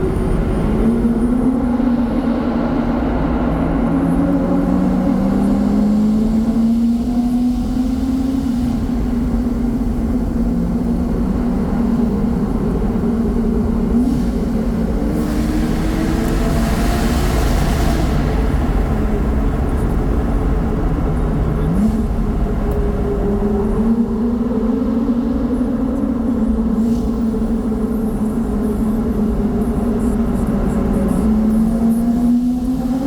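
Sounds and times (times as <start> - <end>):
sports car engines under load: 0.0 - 33.0.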